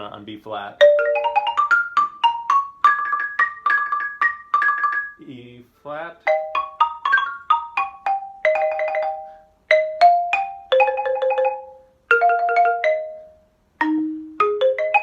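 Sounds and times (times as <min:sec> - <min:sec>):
xylophone ragtime runs: 0:00.8 - 0:05.3, 0:06.2 - 0:15.0.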